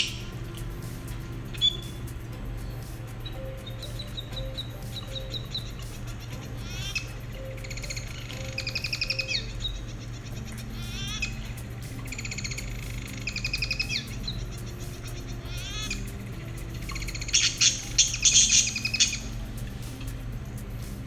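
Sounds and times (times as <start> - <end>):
lovebirds chattering: 3.2 - 20.1
shrill bird squawks: 3.8 - 11.4, 17.2 - 19.3.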